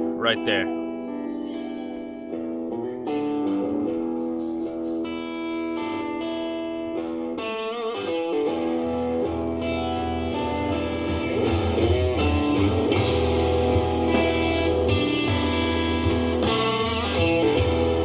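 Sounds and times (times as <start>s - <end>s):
guitar-led music: 0.0s - 18.0s
drums: 3.1s - 6.4s, 8.6s - 18.0s
bass line: 8.6s - 18.0s.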